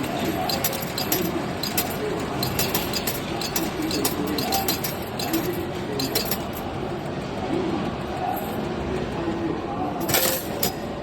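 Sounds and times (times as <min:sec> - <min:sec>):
ticket machine metallic clinks: 0:00.0 - 0:06.8, 0:10.0 - 0:11.0
murmur of voices: 0:00.0 - 0:11.0.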